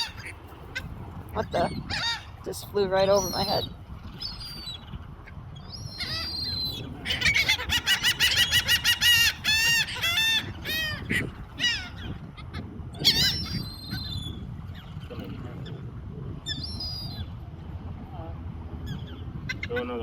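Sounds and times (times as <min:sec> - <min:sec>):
seagulls calling: 0:00.0 - 0:15.8, 0:16.4 - 0:17.4, 0:18.8 - 0:20.0
steady low rumble: 0:00.0 - 0:20.0.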